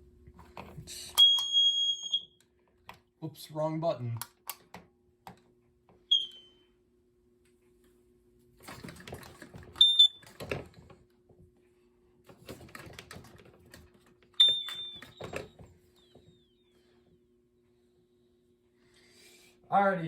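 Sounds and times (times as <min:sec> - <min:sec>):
alarm high beep: 0:06.1 - 0:06.6.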